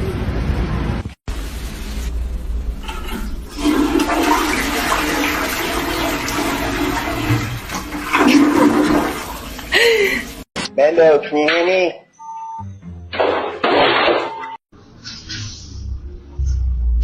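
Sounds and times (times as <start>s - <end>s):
rushing water: 2.8s - 10.5s.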